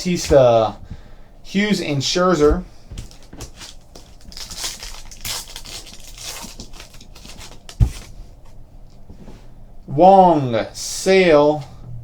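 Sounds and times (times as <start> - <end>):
cards rustling: 2.9 - 8.2
foil wrapper crinkling and tearing: 3.0 - 8.1.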